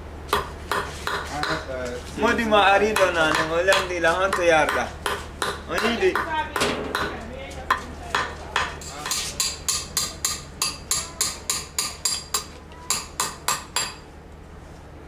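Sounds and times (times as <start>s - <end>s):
hammer striking metal: 3.0s - 7.2s, 8.2s - 14.0s.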